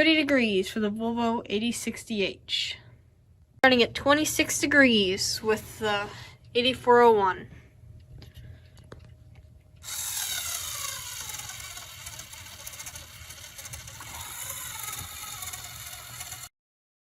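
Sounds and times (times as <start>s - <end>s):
toy motor gear whine: 9.8s - 16.5s.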